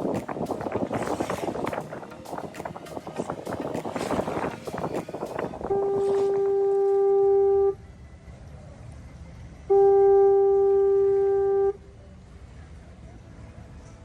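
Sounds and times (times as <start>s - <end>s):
boat horn blasts: 5.6s - 7.8s, 9.7s - 11.9s.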